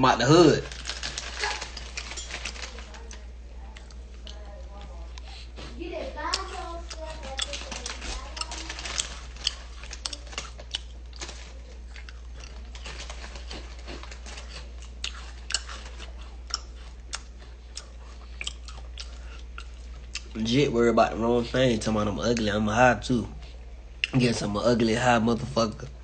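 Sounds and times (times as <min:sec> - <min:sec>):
person chewing crunchily: 0:00.2 - 0:20.7.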